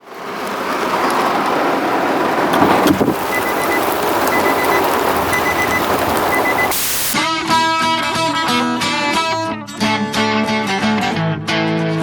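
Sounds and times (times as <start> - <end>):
road traffic: 0.0 - 7.2
faint high beeping: 3.2 - 7.2.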